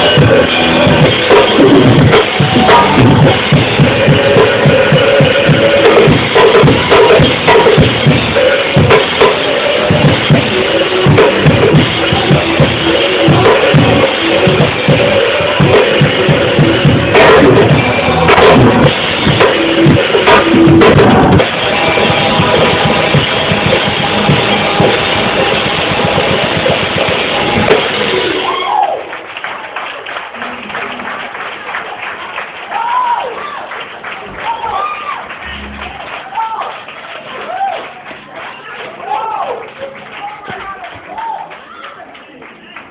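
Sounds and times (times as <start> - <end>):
bass drum and snare hits: 0.0 - 28.4
praise band playing: 0.0 - 42.9.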